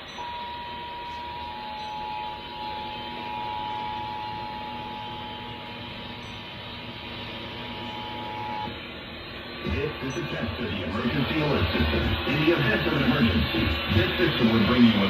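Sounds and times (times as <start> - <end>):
broadcast hiss: 6.8 - 15.0.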